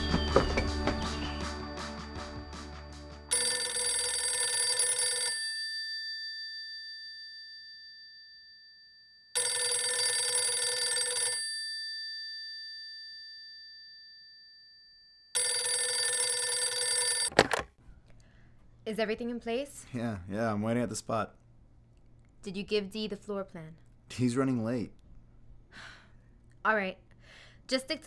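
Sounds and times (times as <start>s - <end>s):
telephone bell ringing: 3.3s - 17.3s.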